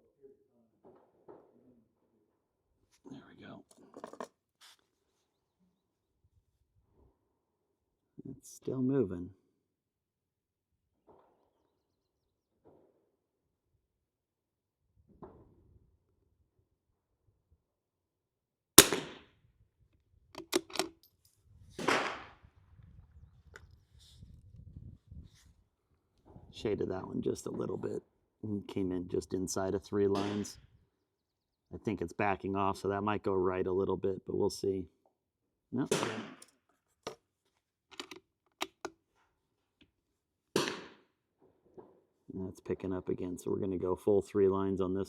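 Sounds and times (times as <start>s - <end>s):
rifle shot: 18.8s - 19.3s, 21.8s - 22.4s, 30.2s - 30.5s, 35.9s - 36.4s, 40.6s - 41.0s
metallic bolt clicks: 20.4s - 21.1s, 37.9s - 39.0s.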